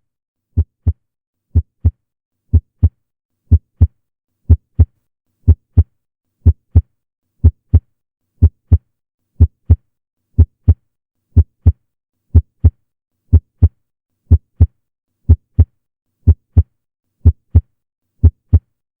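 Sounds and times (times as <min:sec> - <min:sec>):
heartbeat thumps: 0:00.6 - 0:01.9, 0:02.5 - 0:02.9, 0:03.5 - 0:03.9, 0:04.5 - 0:04.9, 0:05.5 - 0:05.8, 0:06.4 - 0:06.8, 0:08.4 - 0:08.8, 0:10.4 - 0:10.8, 0:12.4 - 0:12.7, 0:14.3 - 0:14.7, 0:16.3 - 0:16.6, 0:18.2 - 0:18.6.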